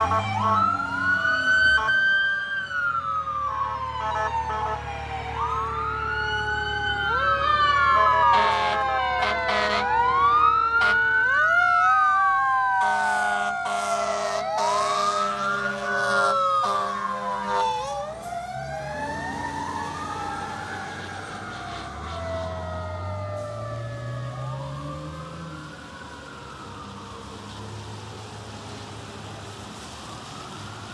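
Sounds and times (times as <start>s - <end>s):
air horn blasts: 0.0s - 1.0s, 4.0s - 4.9s, 8.0s - 11.2s, 12.8s - 18.1s
siren wails: 0.0s - 30.9s
truck engine rumble: 0.0s - 30.9s.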